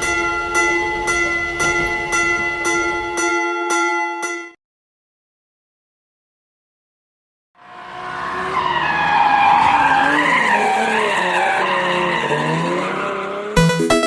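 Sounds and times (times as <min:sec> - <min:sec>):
car tyres screeching: 0:07.7 - 0:13.6.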